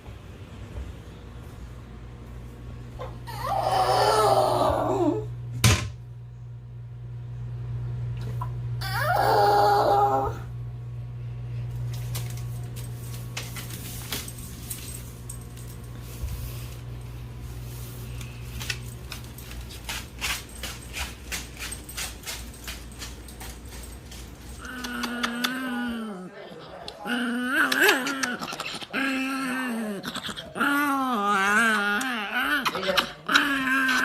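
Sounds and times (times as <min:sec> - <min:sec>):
steady low hum: 0:00.0 - 0:32.4
dog crying out: 0:03.3 - 0:05.3, 0:08.8 - 0:10.5.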